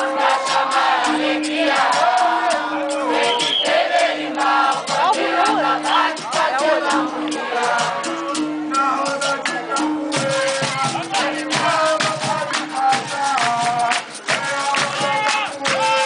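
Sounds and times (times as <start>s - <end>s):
pitched melodic lines: 0.0s - 14.2s
drums and percussion: 0.0s - 16.0s
shaken rattle: 10.4s - 16.0s.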